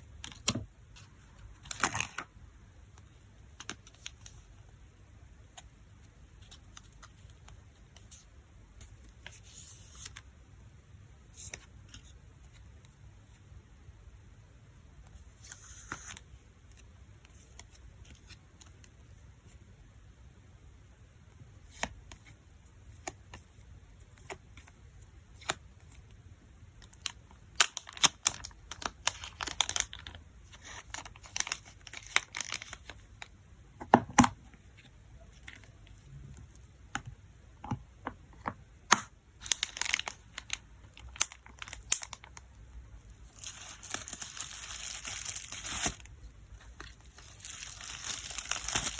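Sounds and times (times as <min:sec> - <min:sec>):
plastic packaging crinkling: 0:26.8 - 0:33.3, 0:39.4 - 0:42.5, 0:43.2 - 0:48.9.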